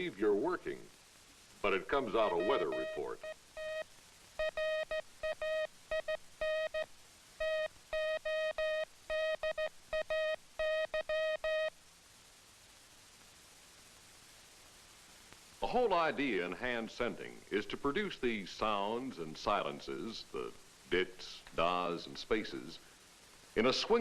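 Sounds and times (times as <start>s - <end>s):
morse code beeps: 2.2s - 3.8s, 4.4s - 11.7s.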